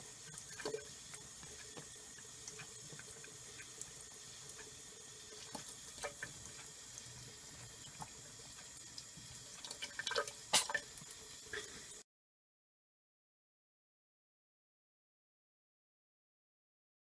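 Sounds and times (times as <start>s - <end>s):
sink tap running: 0.0s - 12.0s
small splashes and clicks: 0.2s - 11.8s.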